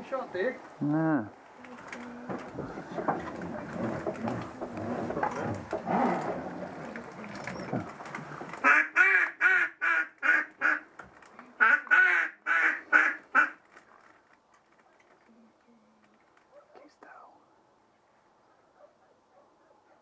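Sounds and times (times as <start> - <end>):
duck quacking: 8.6 - 10.9, 11.6 - 13.6.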